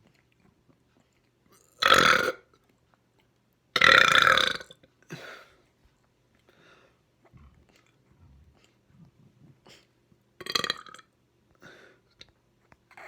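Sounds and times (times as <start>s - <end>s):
person burping: 1.8s - 2.5s, 3.8s - 5.3s, 10.4s - 11.1s.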